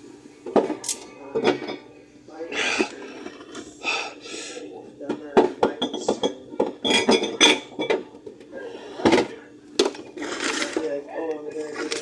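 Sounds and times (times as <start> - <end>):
bottles and cans clinking: 5.4 - 8.1.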